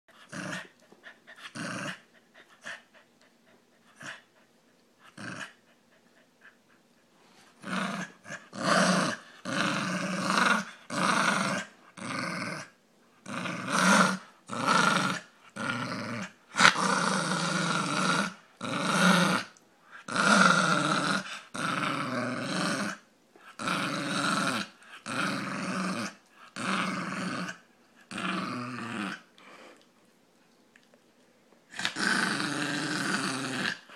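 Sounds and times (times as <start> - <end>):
dog growling grunts: 5.1 - 5.6, 20.1 - 29.2, 31.7 - 33.9.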